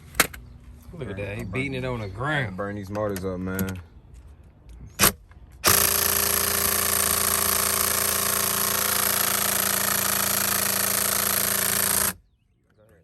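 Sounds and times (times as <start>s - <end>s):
cordless drill running: 5.6s - 12.2s.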